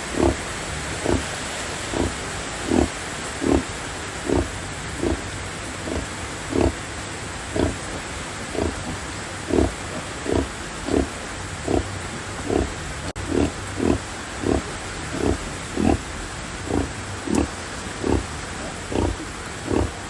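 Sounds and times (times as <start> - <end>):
heavy rain hiss: 0.0 - 20.0
sow grunting: 0.0 - 20.0.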